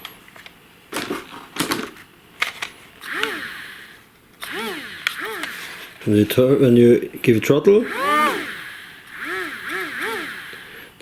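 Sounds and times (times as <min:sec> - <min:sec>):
short rising and falling tones: 0:03.0 - 0:06.2, 0:07.8 - 0:10.9
toy plane and transmitter clicks: 0:03.0 - 0:06.2, 0:07.8 - 0:10.9.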